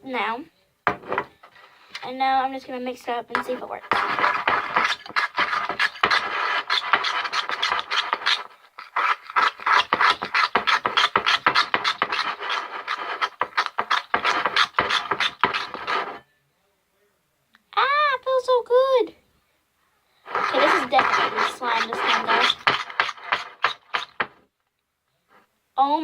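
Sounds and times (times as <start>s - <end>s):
slime being stirred in a container: 3.4s - 16.2s, 20.3s - 24.3s.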